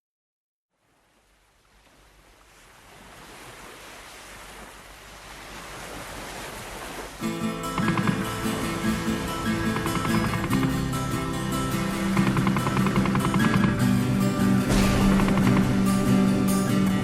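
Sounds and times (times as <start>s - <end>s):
steady rushing noise: 8.2s - 17.0s.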